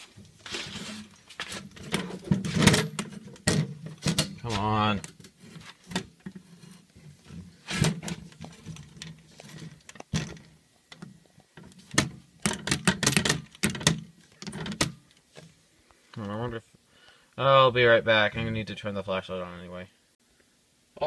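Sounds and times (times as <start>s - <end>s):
objects knocking and clattering: 0.2s - 4.5s, 5.1s - 15.0s.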